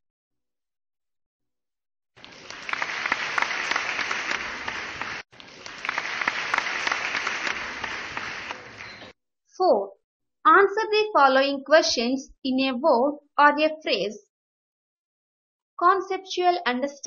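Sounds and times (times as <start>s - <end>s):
crowd clapping: 2.2s - 9.2s.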